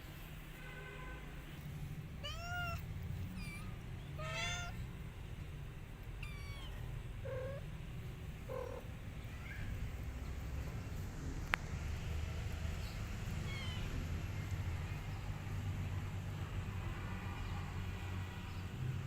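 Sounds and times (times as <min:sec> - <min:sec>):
cats mewing: 0:02.2 - 0:05.0, 0:06.0 - 0:09.9, 0:13.2 - 0:14.2.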